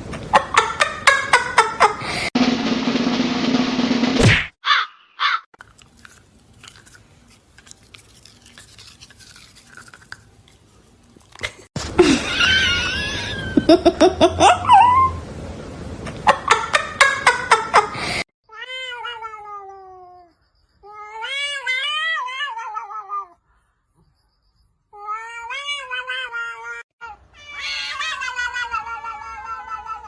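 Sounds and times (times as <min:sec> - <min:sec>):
cat meowing: 0:25.0 - 0:30.0.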